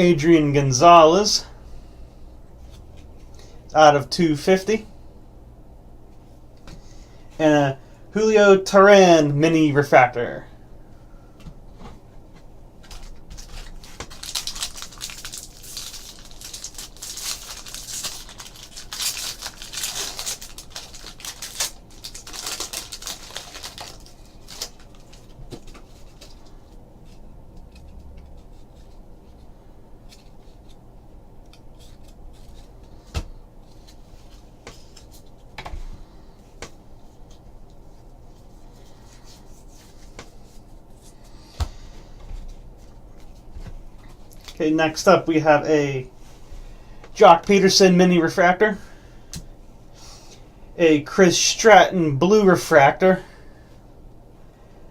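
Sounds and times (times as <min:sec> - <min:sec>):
wrapper tearing and crinkling: 0:13.4 - 0:25.4.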